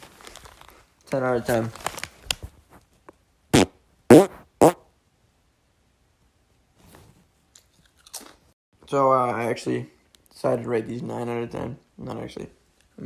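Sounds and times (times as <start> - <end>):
short farts: 3.5 - 4.9.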